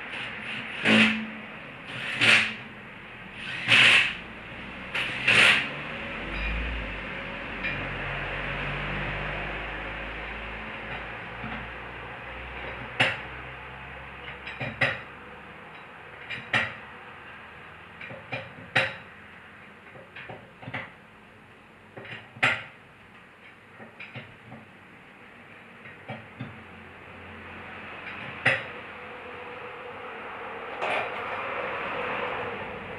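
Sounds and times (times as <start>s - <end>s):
steady hum: 0.0s - 7.9s.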